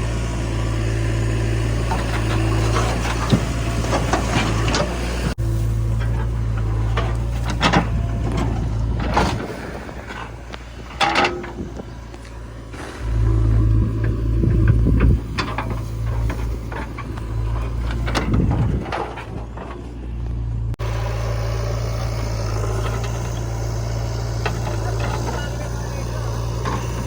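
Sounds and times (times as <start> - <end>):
heavy diesel engine running: 0.0 - 27.0
knocks and clatter: 1.6 - 12.1, 13.4 - 20.5.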